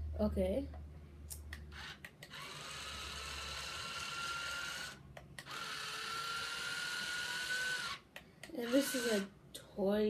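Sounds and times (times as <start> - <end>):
toy electric motors whining: 1.7 - 9.3.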